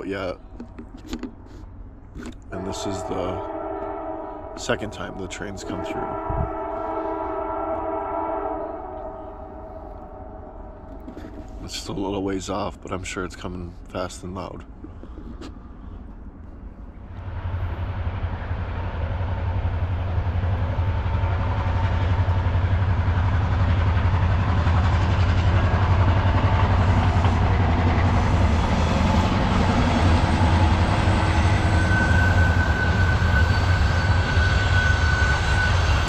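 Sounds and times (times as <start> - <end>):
train passing: 0.0 - 14.9, 15.5 - 36.0
steady high tone: 30.8 - 36.0.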